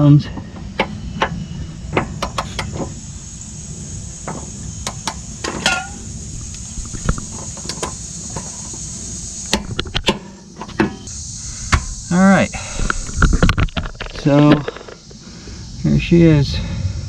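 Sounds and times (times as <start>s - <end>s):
crickets chirring: 0.0s - 17.0s
wrench clicks on metal bolts: 0.8s - 2.9s.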